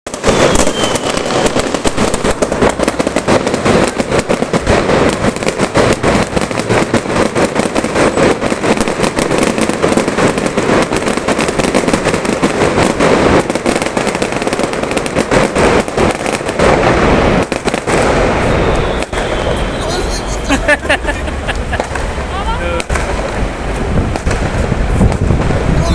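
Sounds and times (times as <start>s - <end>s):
fireworks crackling and banging: 0.1s - 25.9s.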